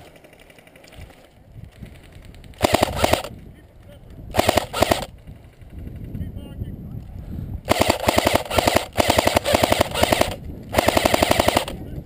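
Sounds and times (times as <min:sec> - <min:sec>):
airsoft rifle firing full-auto: 0:02.6 - 0:03.3, 0:04.3 - 0:05.1, 0:07.7 - 0:11.8.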